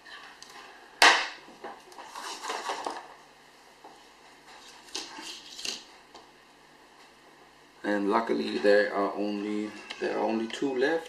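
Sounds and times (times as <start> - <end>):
scraping and rustling: 1.7 - 3.2.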